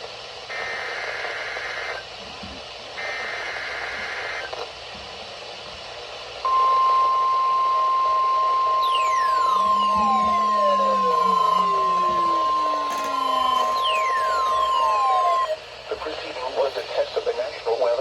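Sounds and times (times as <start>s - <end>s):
faint falling whistles: 8.4s - 15.7s
steady warning alarm tone: 8.6s - 16.0s
raspy digital data bursts: 8.8s - 15.6s.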